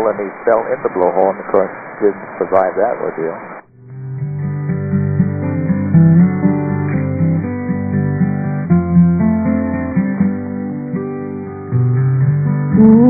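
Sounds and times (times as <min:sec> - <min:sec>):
acoustic guitar music: 0:03.7 - 0:13.0.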